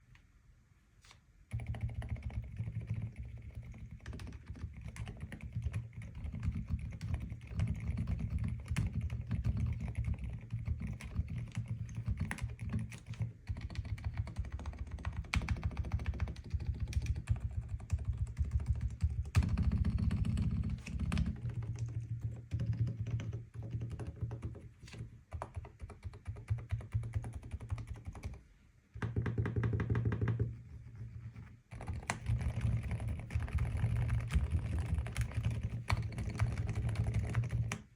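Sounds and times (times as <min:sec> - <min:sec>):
mechanical keyboard typing: 0:01.5 - 0:24.6, 0:25.3 - 0:28.4, 0:31.7 - 0:37.9.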